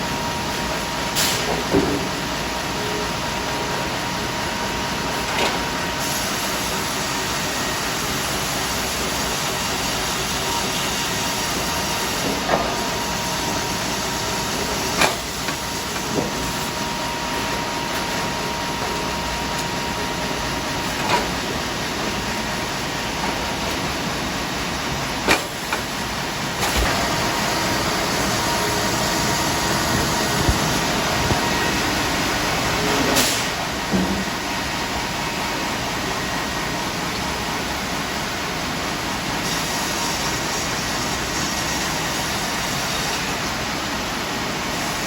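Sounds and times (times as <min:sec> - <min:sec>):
band sawmill running: 0:00.0 - 0:45.0.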